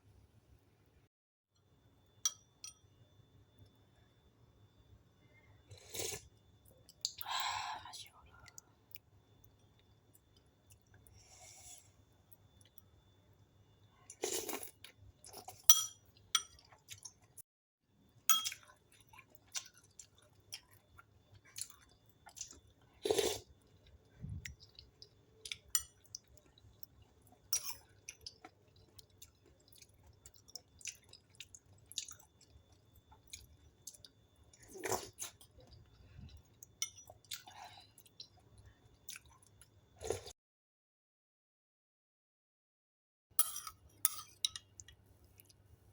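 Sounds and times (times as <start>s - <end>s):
person chewing: 18.5s - 40.3s.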